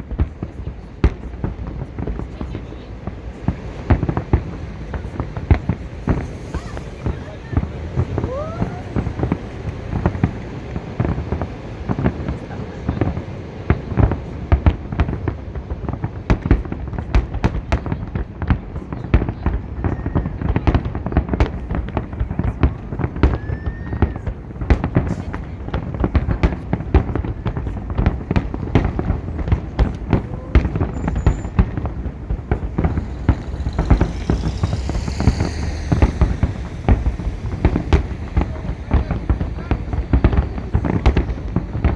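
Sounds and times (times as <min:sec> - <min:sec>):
fireworks bangs and crackles: 0:00.0 - 0:41.9
low rumble: 0:21.5 - 0:41.9.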